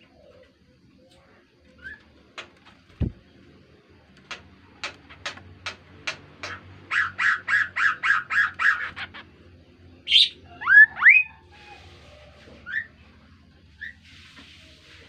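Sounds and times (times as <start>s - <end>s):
bird calling: 4.3s - 9.4s.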